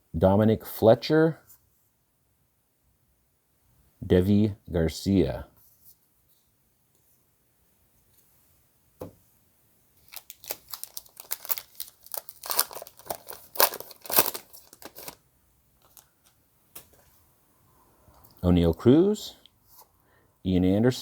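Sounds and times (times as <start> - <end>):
wrapper tearing and crinkling: 10.0 - 15.2.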